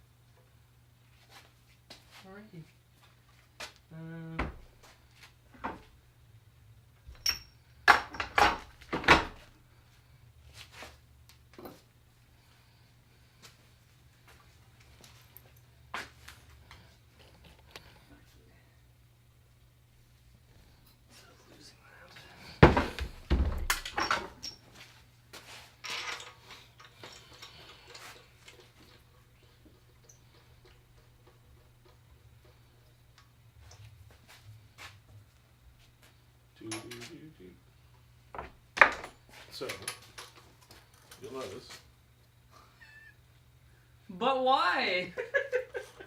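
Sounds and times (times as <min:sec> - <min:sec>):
metal tools knocking and clinking: 0:07.1 - 0:08.6, 0:23.7 - 0:24.6, 0:36.7 - 0:37.1.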